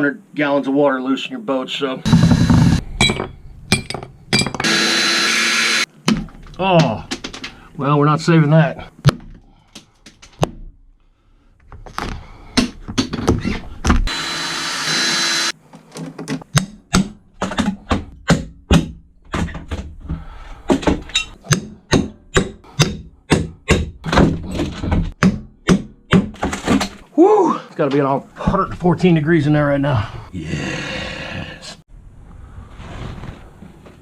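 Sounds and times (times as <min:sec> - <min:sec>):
small power tool: 0:02.1 - 0:02.8, 0:04.6 - 0:05.9, 0:14.1 - 0:15.6
knocks and thuds of prying: 0:06.0 - 0:07.6, 0:09.0 - 0:10.8, 0:11.8 - 0:14.1, 0:16.0 - 0:27.1.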